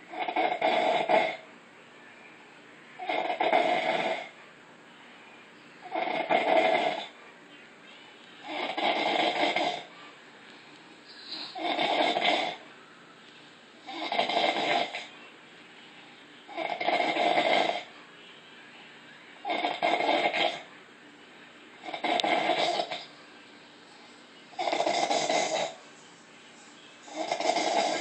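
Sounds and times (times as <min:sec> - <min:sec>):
woman snoring: 0:00.1 - 0:01.4, 0:03.0 - 0:04.3, 0:05.8 - 0:07.2, 0:08.4 - 0:09.9, 0:11.2 - 0:12.6, 0:13.8 - 0:15.1, 0:16.5 - 0:17.9, 0:19.4 - 0:20.7, 0:21.8 - 0:23.0, 0:24.6 - 0:25.8, 0:27.1 - 0:28.0.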